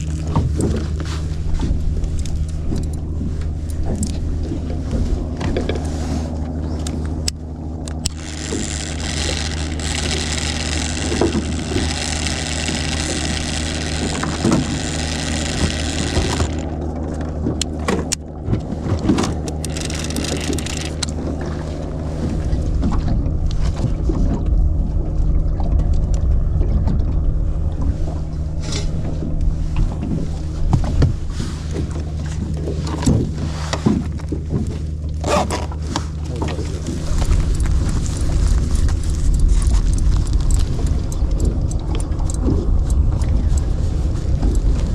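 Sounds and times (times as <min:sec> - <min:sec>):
boat engine humming: 0:00.0 - 0:44.9.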